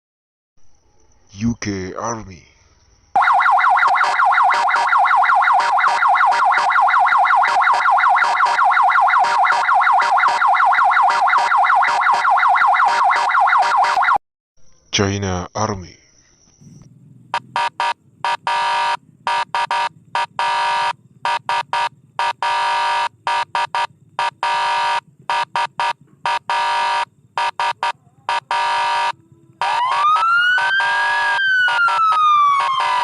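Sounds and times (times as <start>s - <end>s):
vehicle siren: 3.2s - 14.2s, 17.3s - 33.0s
faint low rumble: 14.6s - 18.3s.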